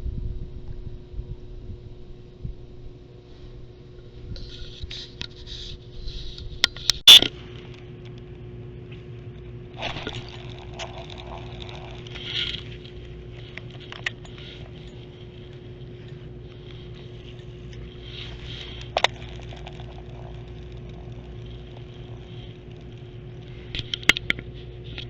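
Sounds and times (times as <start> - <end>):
faint steady hum: 0.0 - 25.0
handling noise rustling and scraping: 4.2 - 7.9, 8.9 - 25.0.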